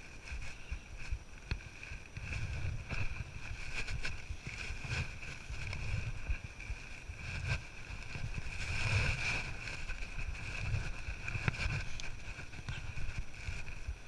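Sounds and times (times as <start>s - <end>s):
steady high-pitched hum: 0.0s - 14.0s
wind buffeting microphone: 0.0s - 14.0s.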